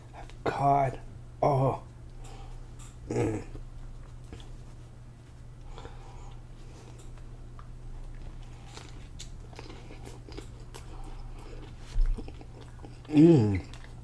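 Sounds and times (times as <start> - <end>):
steady low hum: 0.0 - 14.0
chewing with wet crunches: 5.8 - 14.0.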